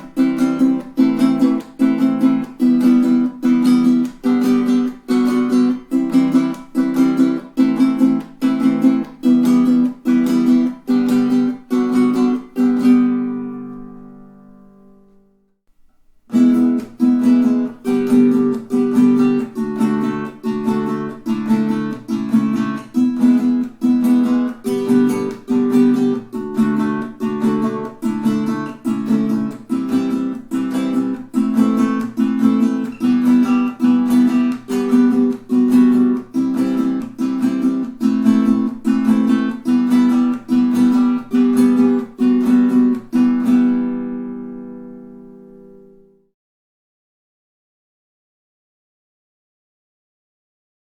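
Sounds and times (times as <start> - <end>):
ukulele strummed: 0.0 - 46.2.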